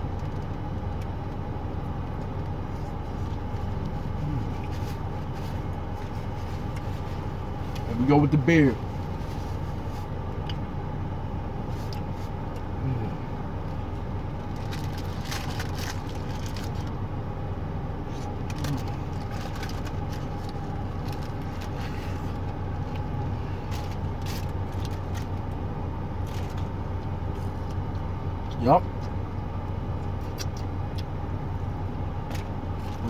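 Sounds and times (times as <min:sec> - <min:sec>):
car engine idling: 0:00.0 - 0:33.0
small clicks and rustles: 0:14.5 - 0:17.0, 0:18.1 - 0:23.1.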